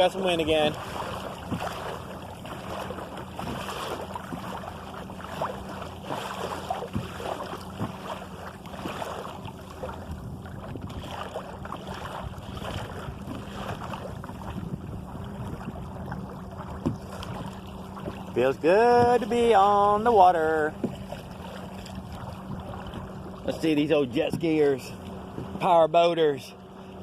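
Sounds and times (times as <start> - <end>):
water splashing against hull: 0.0 - 27.0
wind on microphone: 9.8 - 19.6.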